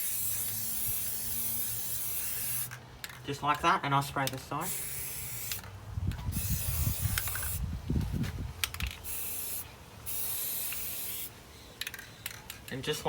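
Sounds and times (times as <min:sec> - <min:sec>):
spray paint can hissing: 0:00.0 - 0:02.8, 0:04.6 - 0:05.7, 0:06.3 - 0:07.6, 0:08.6 - 0:12.0.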